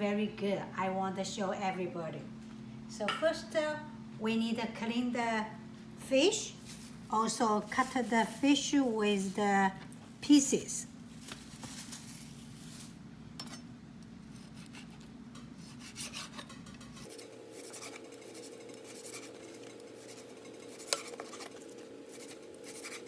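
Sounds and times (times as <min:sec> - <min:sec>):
steady background hum: 0:00.0 - 0:23.0
knife cutting fish on board: 0:14.3 - 0:16.6.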